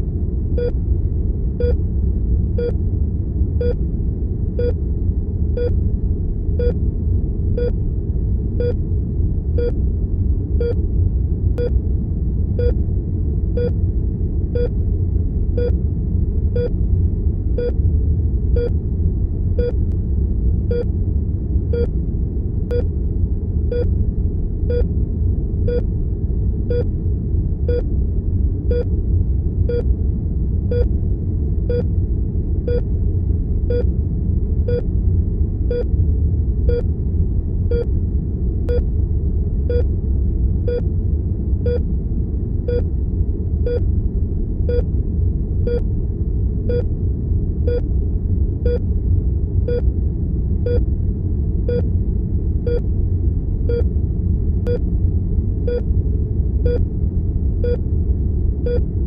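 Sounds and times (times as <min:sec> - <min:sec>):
low room rumble: 0:00.0 - 0:59.0
heart monitor beeping: 0:01.6 - 0:01.8, 0:05.6 - 0:05.8, 0:10.6 - 0:10.8, 0:13.6 - 0:13.8, 0:19.6 - 0:19.8, 0:21.7 - 0:21.9, 0:27.7 - 0:27.9, 0:41.6 - 0:41.8, 0:42.7 - 0:42.9, 0:44.7 - 0:44.9, 0:46.7 - 0:46.9, 0:49.7 - 0:49.9, 0:51.7 - 0:51.9, 0:53.7 - 0:53.9, 0:55.7 - 0:55.9, 0:56.6 - 0:56.8, 0:58.6 - 0:58.8.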